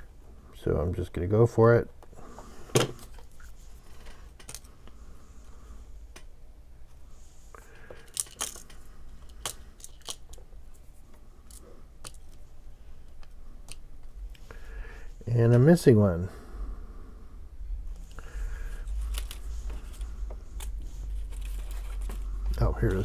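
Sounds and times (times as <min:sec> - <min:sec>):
low steady hum: 0:00.0 - 0:23.0
paper pieces clicking and tapping: 0:07.8 - 0:10.4.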